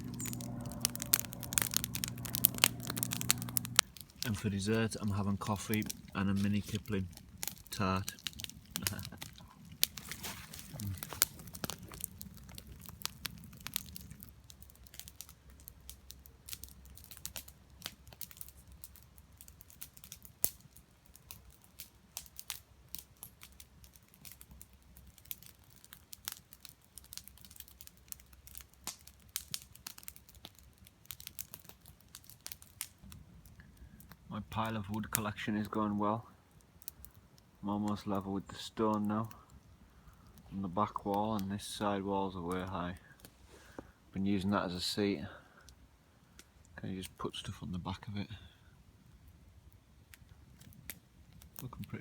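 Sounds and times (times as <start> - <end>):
low hum: 0.0 - 12.1
snack packaging crinkling and tearing: 0.0 - 20.8
sharp clicks and crackles: 0.0 - 35.8.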